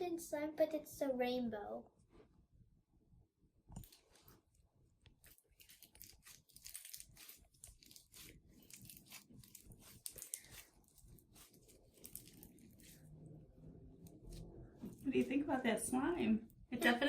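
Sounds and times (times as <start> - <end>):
slime squishing and crackling: 5.1 - 13.2.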